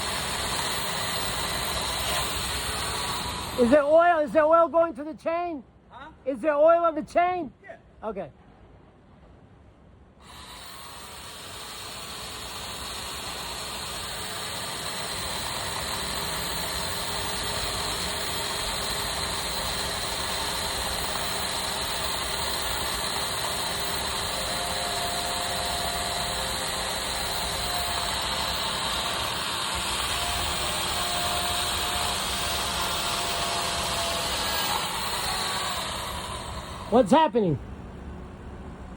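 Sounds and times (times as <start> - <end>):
chainsaw running: 0.0 - 3.9, 10.2 - 37.2.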